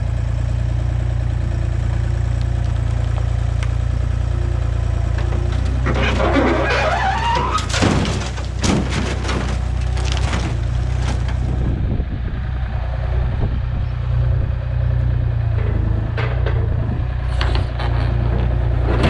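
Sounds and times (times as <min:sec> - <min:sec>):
truck engine running: 0:00.0 - 0:17.6
sharp knocks and clanks: 0:05.1 - 0:11.7
rising squeal: 0:05.2 - 0:11.2.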